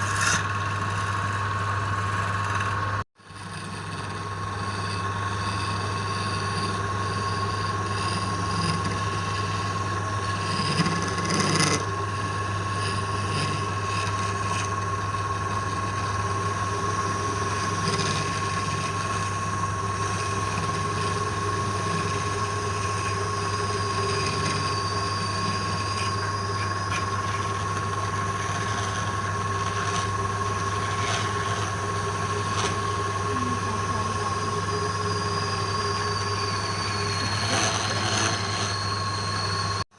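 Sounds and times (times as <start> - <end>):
lathe scrape: 0.0 - 39.8
wood lathe running: 0.0 - 39.8.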